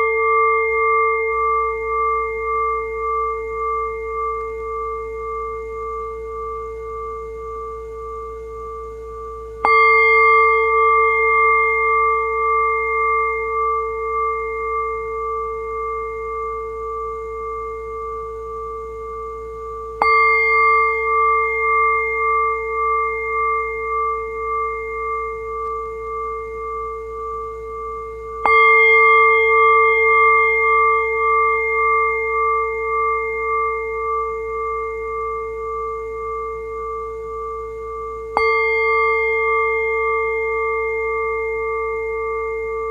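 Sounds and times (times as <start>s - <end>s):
bell struck: 0.0s - 5.0s, 9.6s - 15.9s, 20.0s - 36.2s, 38.0s - 42.9s.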